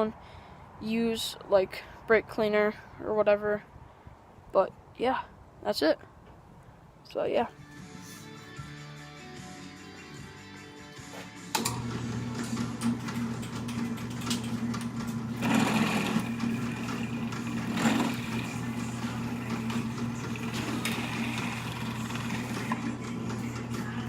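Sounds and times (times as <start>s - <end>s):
electric drill drilling metal: 15.3s - 22.9s.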